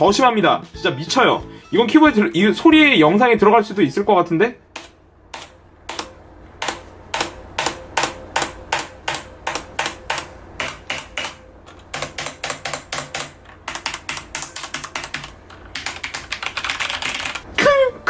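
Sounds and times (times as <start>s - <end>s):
mechanical keyboard typing: 5.4s - 17.5s.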